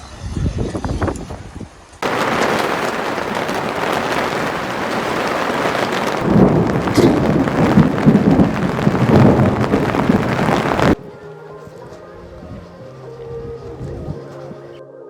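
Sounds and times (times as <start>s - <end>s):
low rumble: 2.0s - 11.0s
heavy rain pouring: 2.0s - 11.1s.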